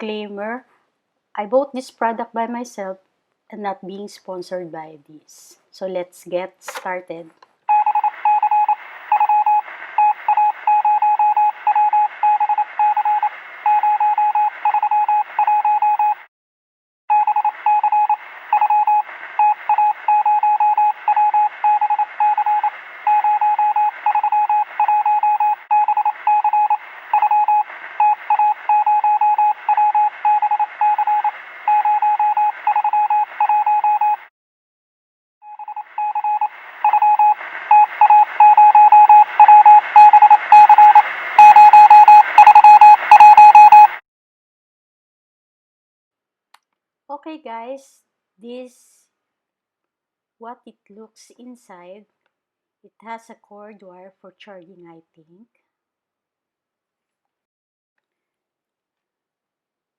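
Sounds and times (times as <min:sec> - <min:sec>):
electronic beeping: 0:35.5 - 0:44.0.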